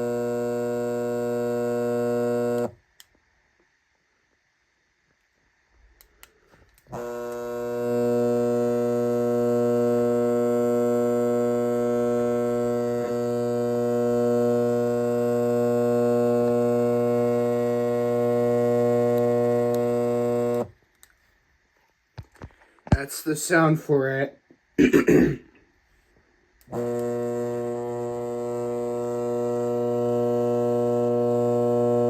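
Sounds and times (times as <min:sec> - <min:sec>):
fan motor buzzing: 0:00.0 - 0:02.8, 0:06.9 - 0:20.7, 0:26.7 - 0:32.0.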